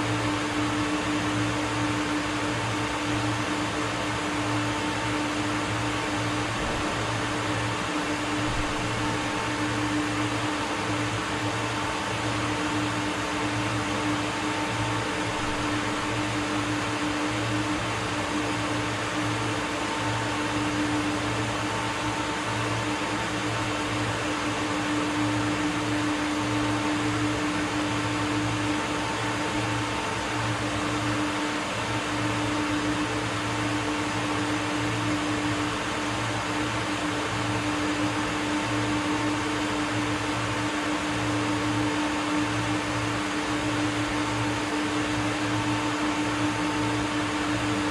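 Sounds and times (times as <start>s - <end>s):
industrial machinery humming: 4.0s - 12.1s, 12.9s - 19.0s.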